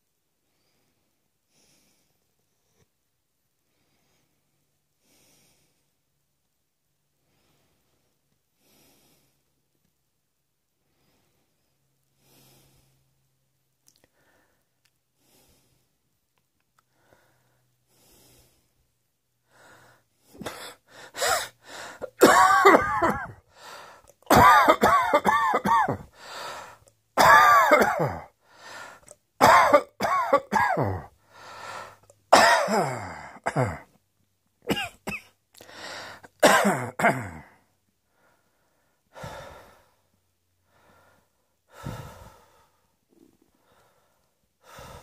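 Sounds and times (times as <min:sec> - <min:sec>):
person coughing: 0:20.4 - 0:23.4, 0:24.3 - 0:26.1, 0:27.2 - 0:28.3, 0:29.4 - 0:31.1, 0:32.3 - 0:33.9, 0:34.7 - 0:35.3, 0:36.4 - 0:37.6.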